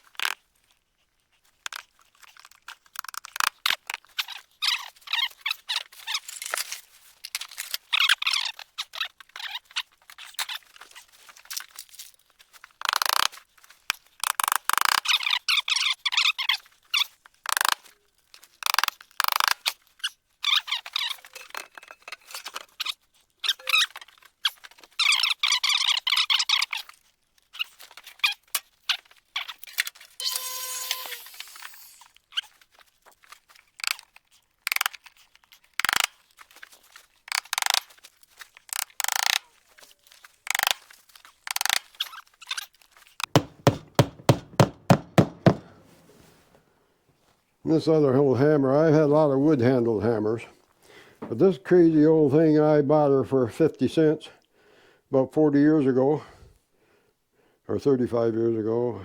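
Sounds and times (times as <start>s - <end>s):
wood scraping and squeaking: 1.7s - 11.8s, 12.7s - 34.1s, 34.7s - 46.4s
hammer driving a nail: 43.3s - 45.9s.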